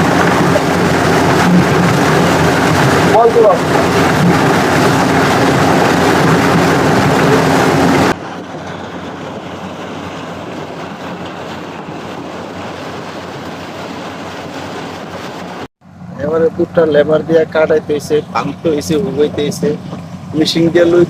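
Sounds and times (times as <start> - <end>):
wind noise: 0.0 - 15.6
combine harvester rumbling: 0.0 - 21.0.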